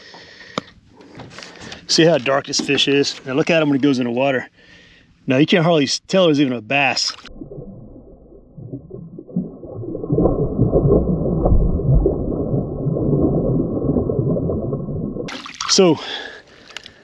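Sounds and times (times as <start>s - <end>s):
muffled underwater water sloshing: 7.0s - 15.7s.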